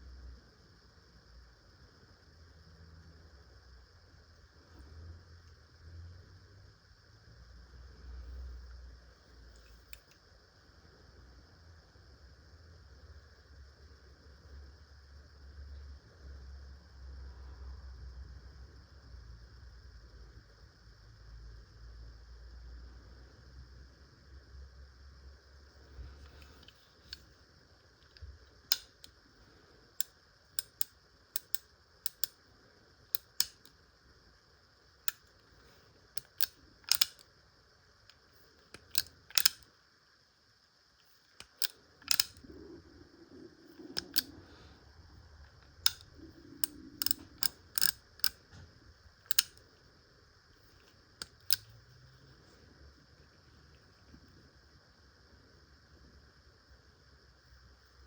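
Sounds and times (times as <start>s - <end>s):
revolver action clicking: 28.0s - 29.2s, 30.0s - 32.4s, 33.1s - 33.8s, 35.0s - 37.3s, 38.1s - 39.7s, 41.0s - 42.6s, 43.6s - 44.7s, 45.4s - 49.9s, 50.6s - 51.7s.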